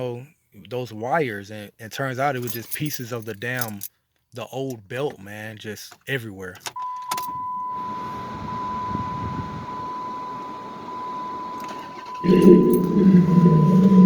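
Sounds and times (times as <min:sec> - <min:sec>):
high electronic warning tone: 0:06.9 - 0:14.0
low even hum: 0:07.8 - 0:14.0.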